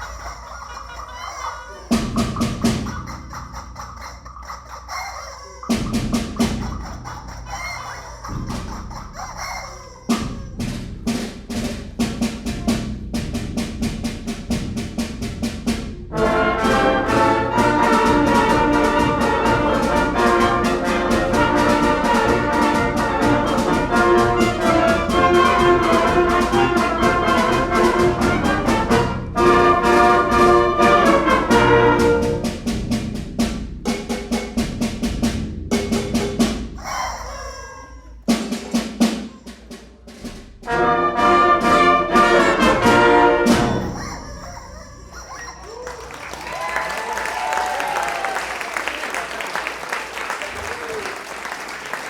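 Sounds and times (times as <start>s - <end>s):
quick percussion beat: 0.0s - 52.0s
concert band playing a galop: 14.5s - 32.9s, 40.7s - 44.0s.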